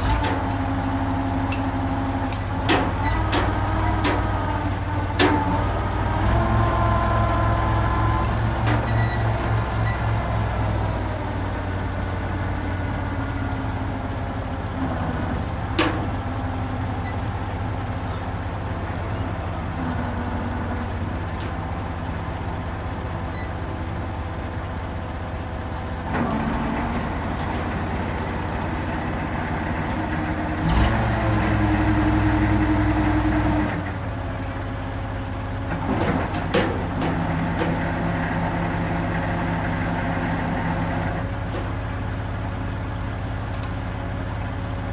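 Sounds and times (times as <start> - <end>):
crane engine running: 0.0 - 44.9
chain clanking: 0.2 - 4.2, 39.2 - 39.7.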